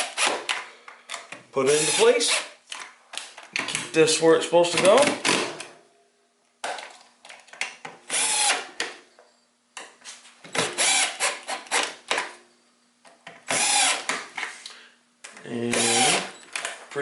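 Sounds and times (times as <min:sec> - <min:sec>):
power drill driving screws: 0:01.7 - 0:02.5, 0:08.1 - 0:08.7, 0:10.6 - 0:12.0, 0:13.5 - 0:14.1, 0:15.7 - 0:16.4.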